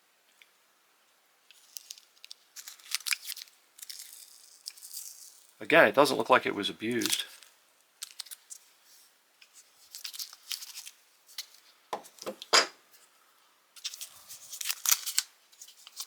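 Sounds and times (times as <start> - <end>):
rustling and crinkling: 1.4 - 5.6, 6.9 - 13.2, 13.8 - 16.0.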